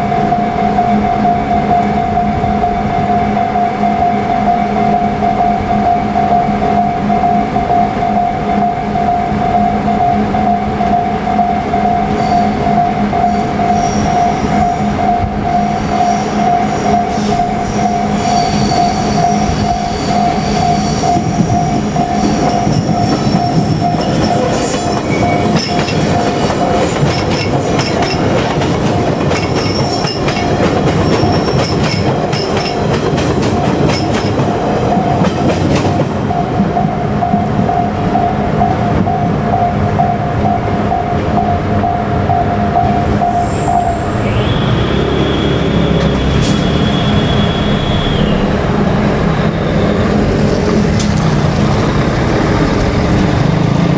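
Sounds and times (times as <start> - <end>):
electric train passing: 0.0 - 53.9
train wheels squealing: 11.3 - 34.4, 42.7 - 51.2.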